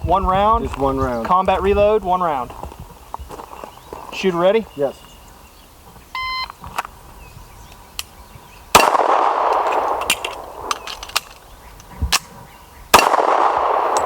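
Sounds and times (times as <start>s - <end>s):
handgun shot echoing: 8.8s - 11.3s, 12.9s - 14.0s
magazine change clicks: 8.8s - 12.3s, 13.0s - 14.0s.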